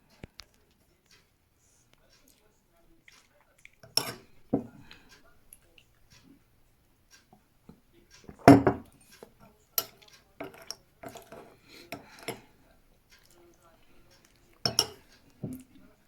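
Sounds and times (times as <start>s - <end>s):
mug and spoon clinking: 3.8s - 5.2s, 7.7s - 12.6s, 14.6s - 15.9s.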